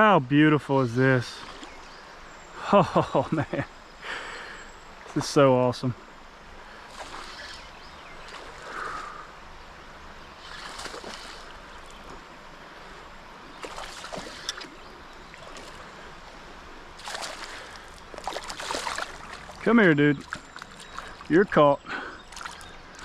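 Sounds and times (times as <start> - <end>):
creek water running: 0.0 - 23.0
water splashes: 1.2 - 1.8, 4.2 - 6.0, 6.6 - 9.3, 10.2 - 23.0.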